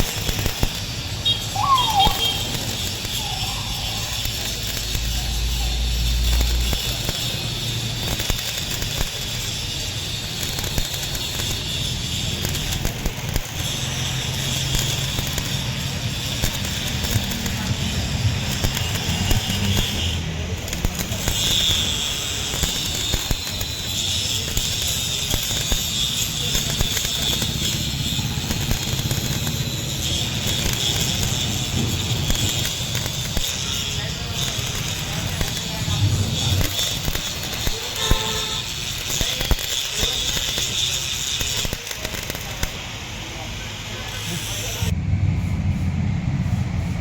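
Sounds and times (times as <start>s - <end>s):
arc welding crackling hiss: 0.0s - 44.9s
low hum: 44.9s - 47.0s.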